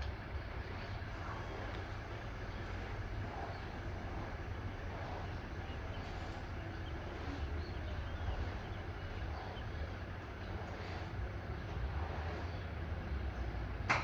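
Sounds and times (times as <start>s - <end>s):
diesel truck engine rumbling: 1.1s - 11.6s.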